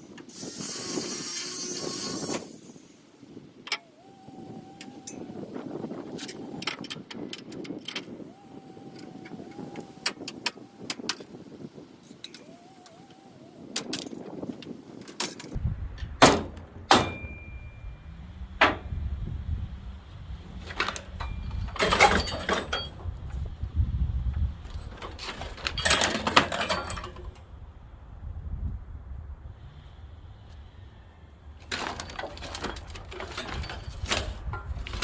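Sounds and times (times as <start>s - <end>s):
metal clanks and knocks: 15.0s - 17.8s, 18.6s - 18.9s, 20.6s - 23.2s, 24.8s - 27.4s, 31.7s - 35.0s
steady low rumble: 15.5s - 25.8s, 27.3s - 31.7s
metal rattling and scraping: 20.4s - 23.5s, 24.3s - 27.5s, 31.6s - 35.0s.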